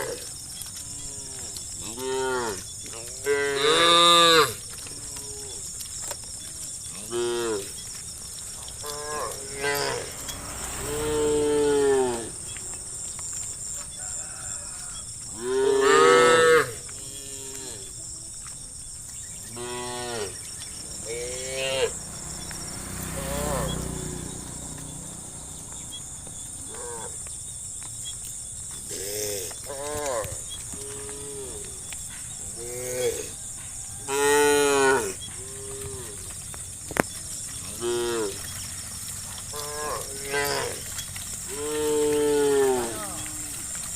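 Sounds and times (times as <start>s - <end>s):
cattle mooing: 0.9s - 5.6s, 6.9s - 7.8s, 8.7s - 12.6s, 15.4s - 17.9s, 19.5s - 20.4s, 21.0s - 26.0s, 34.1s - 36.3s, 37.6s - 38.6s, 39.5s - 43.9s.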